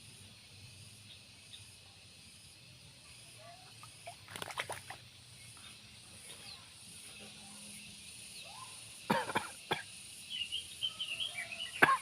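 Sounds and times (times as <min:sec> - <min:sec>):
insects droning: 0:00.0 - 0:12.0.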